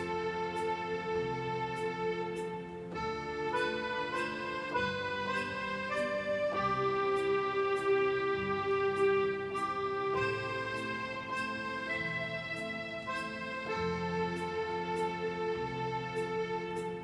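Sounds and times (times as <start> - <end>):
electronic keyboard melody: 0.0 - 17.0
soft ticking beat: 0.0 - 17.0.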